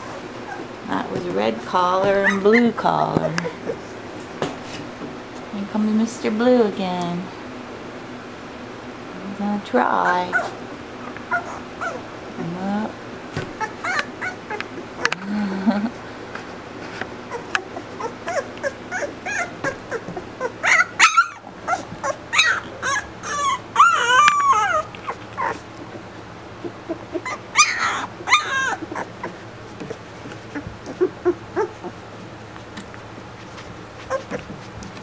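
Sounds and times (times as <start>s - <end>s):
puppies whimpering and squealing: 0.0s - 4.0s, 9.8s - 12.1s, 13.5s - 15.2s, 17.2s - 35.0s.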